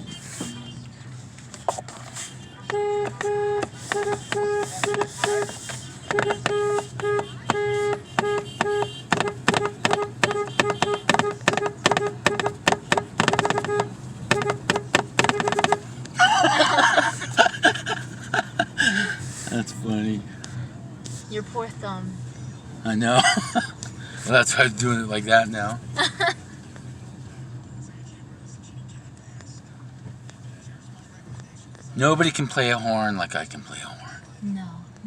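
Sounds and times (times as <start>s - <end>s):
car horn beeping: 0.0s - 20.7s, 22.9s - 26.2s.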